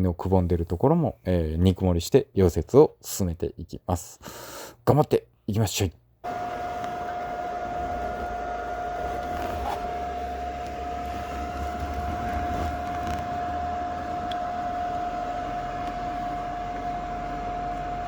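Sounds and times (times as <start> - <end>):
high whine of welder: 6.2 - 18.0
welder buzzing: 6.2 - 18.0.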